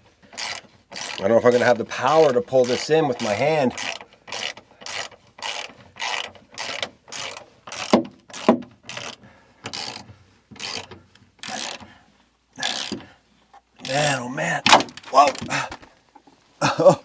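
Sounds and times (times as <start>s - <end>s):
ratchet wrench ratcheting: 0.3s - 11.9s, 12.6s - 13.1s
sharp creaks: 0.3s - 12.0s, 12.6s - 13.2s.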